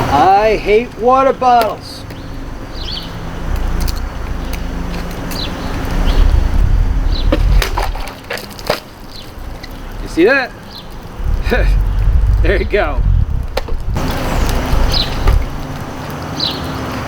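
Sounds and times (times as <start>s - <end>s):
low steady rumble: 5.9s - 8.1s, 10.9s - 16.0s.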